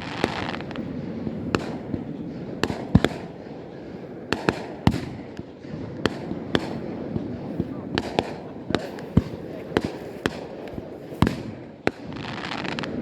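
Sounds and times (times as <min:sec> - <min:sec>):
crackling hiss: 0:00.0 - 0:13.0
fireworks bangs: 0:00.0 - 0:13.0.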